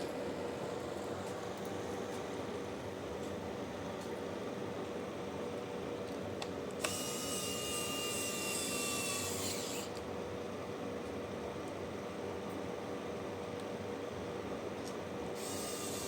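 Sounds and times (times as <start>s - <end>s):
steady low hum: 0.0s - 7.0s
small electric motor whirring: 6.8s - 10.0s, 15.4s - 16.0s.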